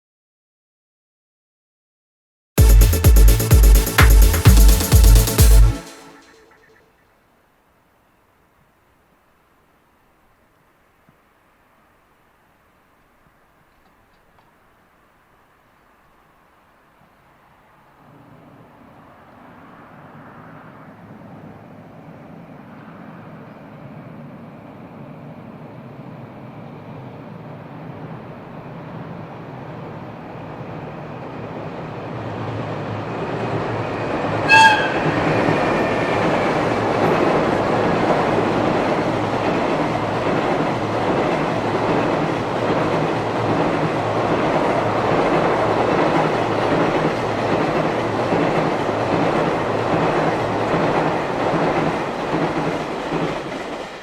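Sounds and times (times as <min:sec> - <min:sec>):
freight train running on rails: 0:02.6 - 0:06.8, 0:16.2 - 0:54.0
train horn blast: 0:34.4 - 0:36.2.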